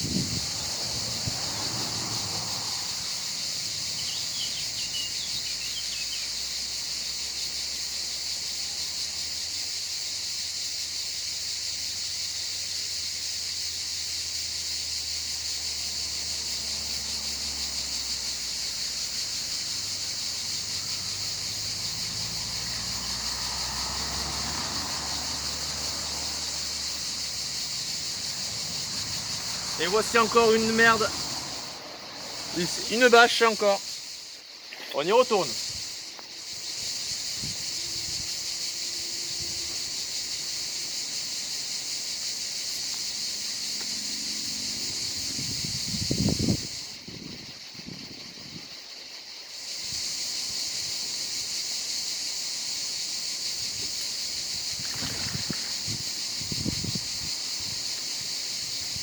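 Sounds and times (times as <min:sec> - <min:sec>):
insects chorus: 0:00.0 - 0:59.0
bird chirps: 0:03.9 - 0:06.3.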